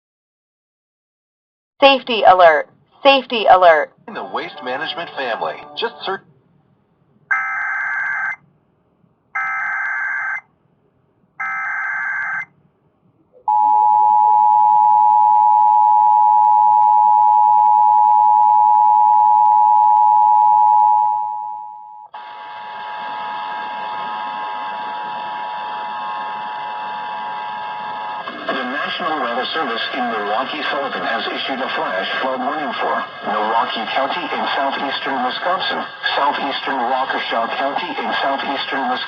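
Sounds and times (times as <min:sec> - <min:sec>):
two-tone attention signal: 0:13.5 - 0:22.1
buzzy tone with overtones: 0:22.2 - 0:28.7.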